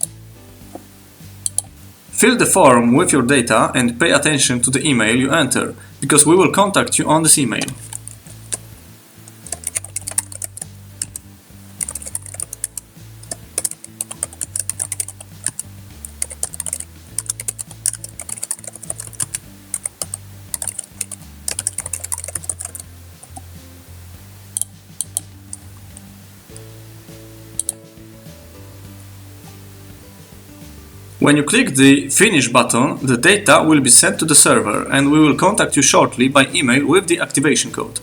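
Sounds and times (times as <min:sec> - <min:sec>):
quiet background music: 0:00.0 - 0:38.0
computer keyboard typing: 0:01.4 - 0:01.7, 0:07.6 - 0:08.7, 0:09.3 - 0:23.5, 0:24.6 - 0:26.0, 0:27.6 - 0:27.8.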